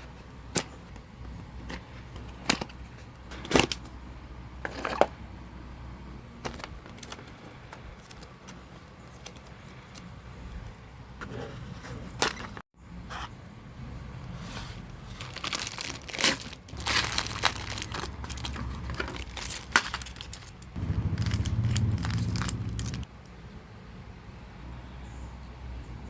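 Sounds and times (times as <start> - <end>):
toy packaging crinkling and tearing: 15.2 - 23.1.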